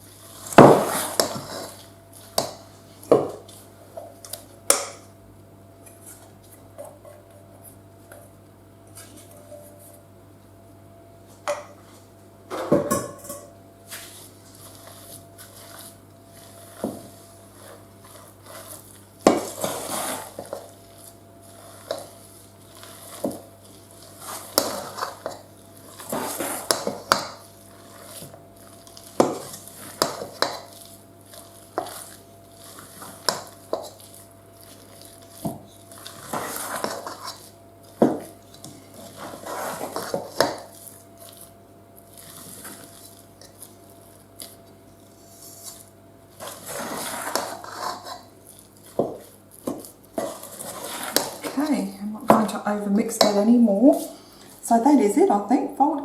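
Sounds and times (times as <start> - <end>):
ladle scraping mixing bowl: 0.2 - 2.4, 13.9 - 41.5, 42.1 - 51.7.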